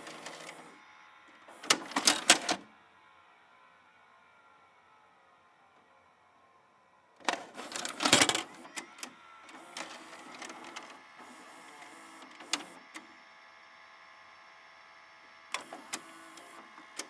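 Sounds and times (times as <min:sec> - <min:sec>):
tape mechanism whirring and clicking: 0:00.0 - 0:00.8, 0:01.5 - 0:02.6, 0:07.2 - 0:13.2, 0:15.5 - 0:17.0.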